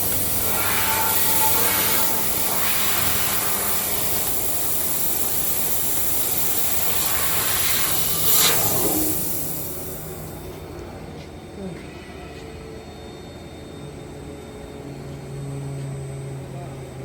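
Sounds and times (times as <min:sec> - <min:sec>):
cutting machine loud hiss: 0:00.0 - 0:10.6.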